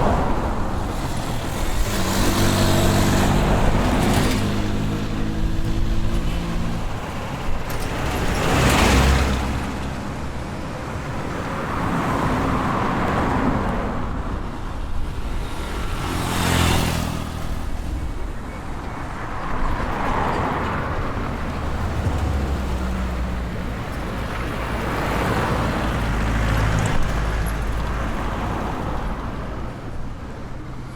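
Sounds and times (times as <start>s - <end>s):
vehicle passing close: 0.0s - 10.1s, 15.3s - 29.2s
traffic hum: 0.0s - 30.9s.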